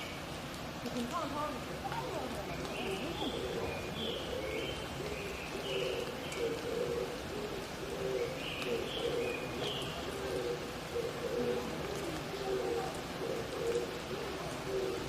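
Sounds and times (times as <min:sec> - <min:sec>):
hiss of wet forest: 0:00.0 - 0:15.0
dove cooing: 0:01.8 - 0:15.0.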